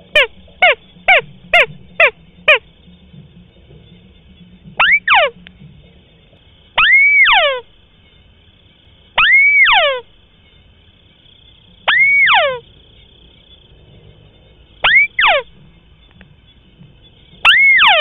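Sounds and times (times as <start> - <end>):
crake calling: 0.0 - 2.8, 4.8 - 5.6, 6.3 - 7.8, 9.1 - 10.2, 11.6 - 12.7, 14.8 - 16.4, 17.4 - 18.0.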